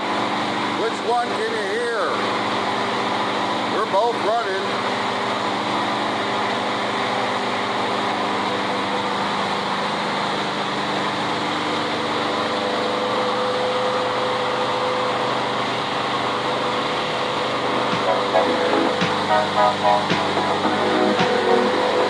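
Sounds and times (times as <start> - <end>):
lawn mower engine running: 0.0 - 22.0
motorcycle engine running: 16.1 - 22.0
steady high tone: 17.5 - 22.0.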